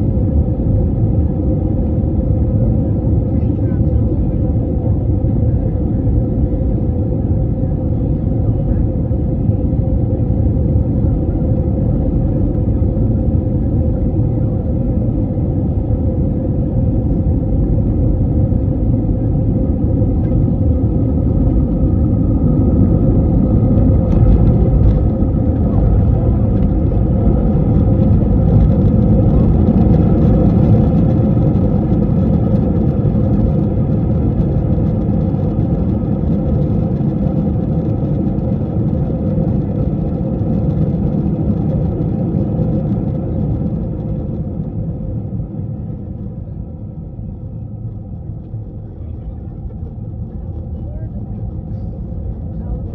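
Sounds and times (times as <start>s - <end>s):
constant hum: 0.0s - 52.9s
jet engines and airflow rumble: 0.0s - 52.9s.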